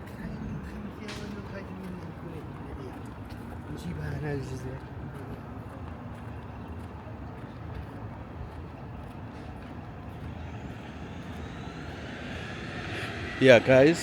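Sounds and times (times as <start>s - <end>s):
city traffic rumble: 4.8s - 14.0s
vehicle whine speeding up: 9.2s - 14.0s.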